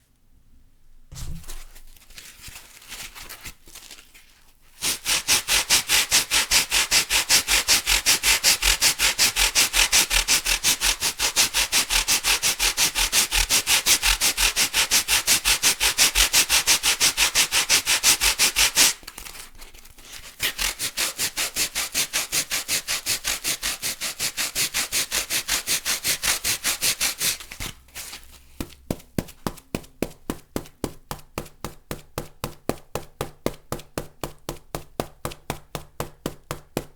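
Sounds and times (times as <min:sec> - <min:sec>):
packing foam rubbing: 0:26.0 - 0:31.0.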